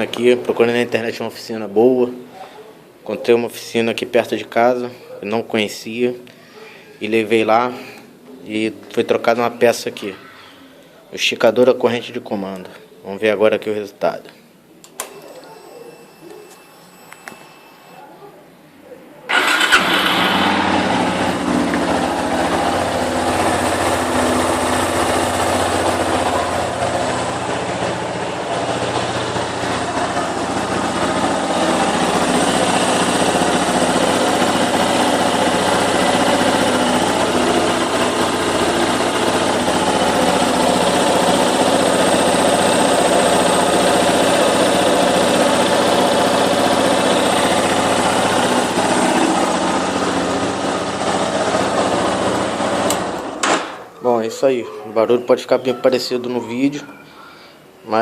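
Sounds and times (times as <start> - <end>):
motorcycle engine idling: 19.3 - 53.4.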